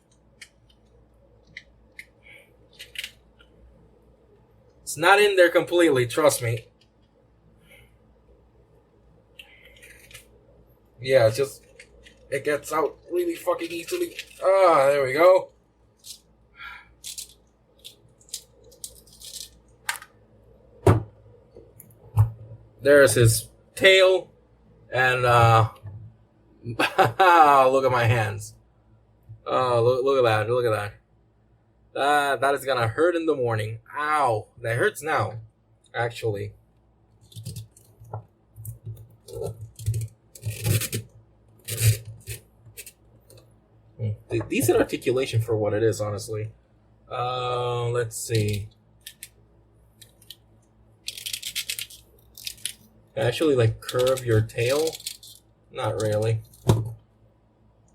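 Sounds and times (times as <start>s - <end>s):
plastic toy clicks and rustles: 51.0s - 52.8s, 53.8s - 56.7s.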